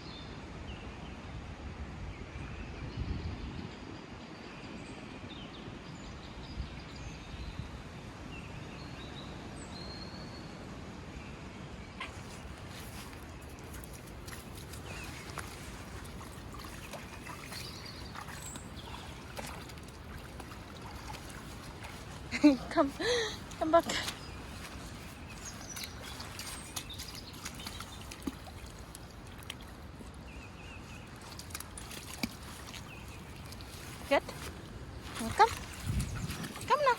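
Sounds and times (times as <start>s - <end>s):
running rainwater rushing: 12.1s - 36.9s.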